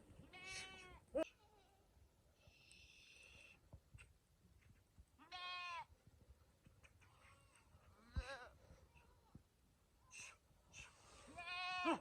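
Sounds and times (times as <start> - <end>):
livestock bleating: 0.2 - 1.8, 5.2 - 5.9, 11.3 - 12.0.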